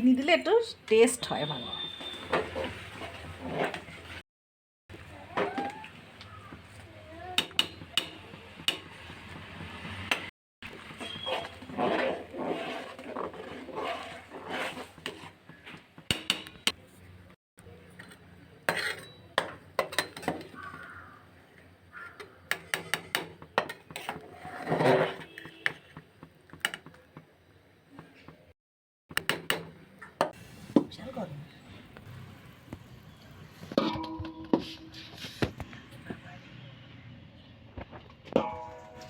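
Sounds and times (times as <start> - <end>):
utensil scraping and clinking pan: 11.0 - 15.4, 18.6 - 20.6, 38.4 - 39.0.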